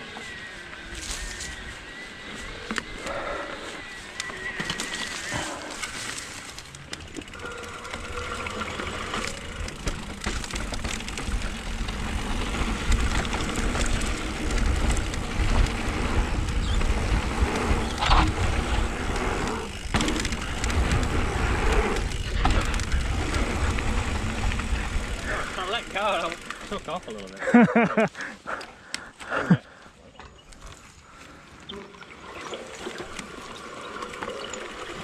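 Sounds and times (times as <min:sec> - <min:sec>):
bike tyres rumbling over dirt: 0:00.0 - 0:28.6, 0:30.4 - 0:35.0
wind rushing over microphone: 0:12.1 - 0:25.6.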